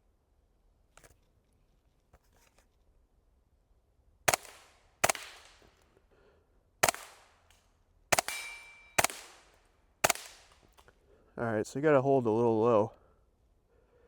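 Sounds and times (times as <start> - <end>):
suppressed rifle shots: 4.3 - 5.7, 6.8 - 7.3, 8.1 - 10.8.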